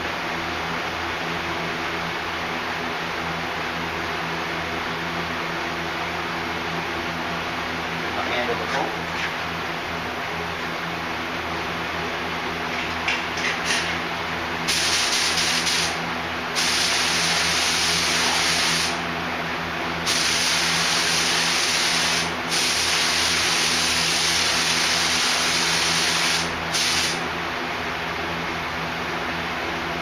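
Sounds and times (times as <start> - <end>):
paint spray gun hissing: 14.7 - 16.0, 16.6 - 19.0, 20.0 - 27.2.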